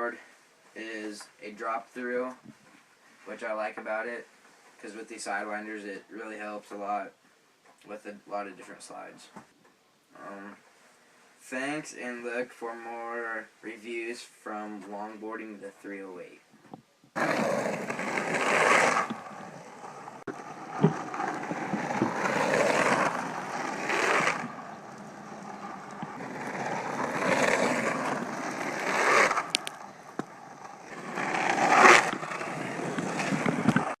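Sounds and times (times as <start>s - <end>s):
longboard rolling on pavement: 17.2s - 34.0s.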